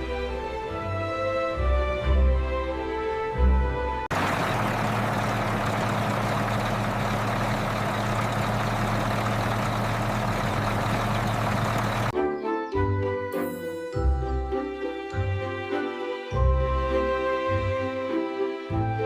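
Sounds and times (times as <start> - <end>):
background music: 0.0 - 4.1, 12.1 - 19.0
motor humming: 4.1 - 12.1.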